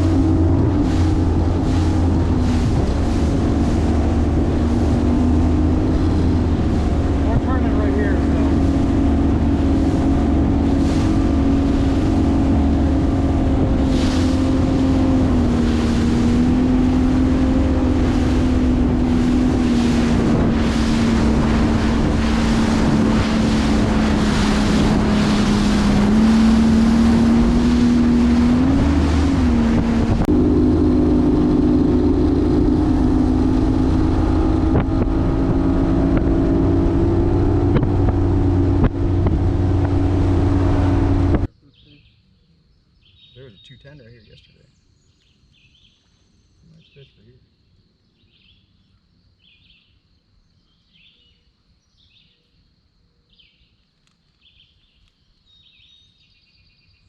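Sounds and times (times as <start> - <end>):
wind buffeting microphone: 0.0 - 41.5
outboard motor drone: 0.0 - 41.6.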